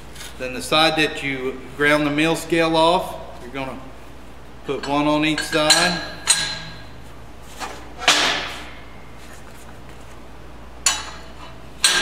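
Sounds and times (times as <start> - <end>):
metal clank with ring: 4.8 - 7.0, 10.8 - 12.0.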